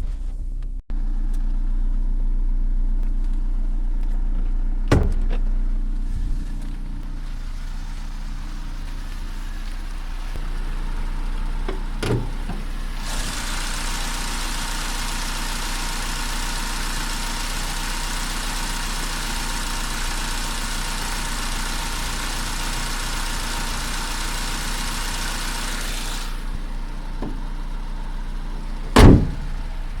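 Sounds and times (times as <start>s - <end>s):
car engine idling: 0.9s - 30.0s
sharp loud knock: 29.0s - 29.5s.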